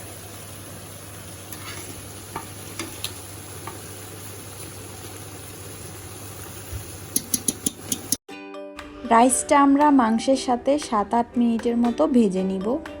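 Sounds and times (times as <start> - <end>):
rice and chicken sizzling in a pot: 0.0 - 8.2
spatula scraping a pot: 1.5 - 3.2.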